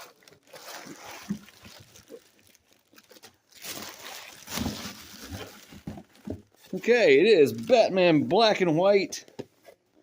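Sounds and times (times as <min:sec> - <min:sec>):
packing material and cardboard rustling: 0:00.0 - 0:08.8.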